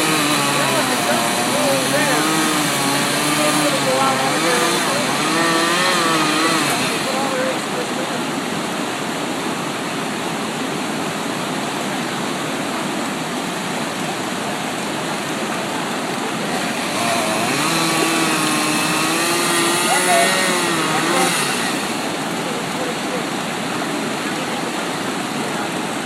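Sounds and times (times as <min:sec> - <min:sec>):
chainsaw engine running: 0:00.0 - 0:08.6, 0:15.2 - 0:24.2
river water rushing: 0:00.0 - 0:26.0.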